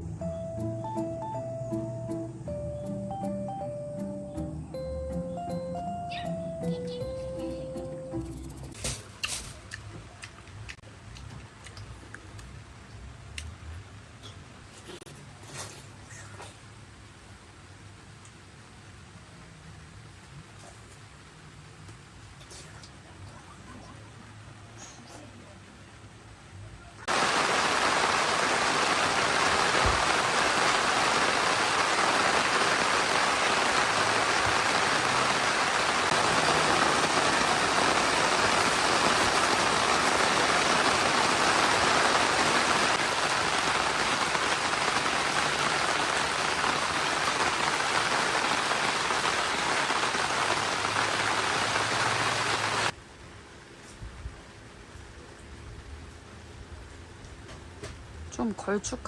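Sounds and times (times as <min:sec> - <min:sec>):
heavy rain falling: 0:27.0 - 0:53.0.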